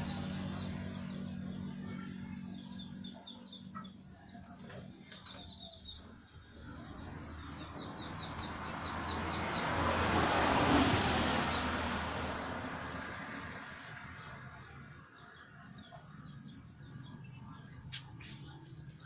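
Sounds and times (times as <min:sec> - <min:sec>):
vehicle passing by: 0:00.0 - 0:04.1, 0:04.8 - 0:19.0
small bird chirping: 0:00.0 - 0:09.8, 0:13.8 - 0:19.0.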